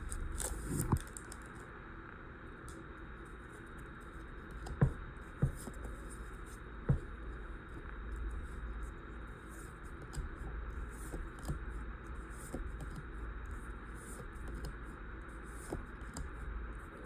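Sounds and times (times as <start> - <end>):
low steady hum: 0.0 - 17.0
cards and foil pack rustling: 0.1 - 1.6.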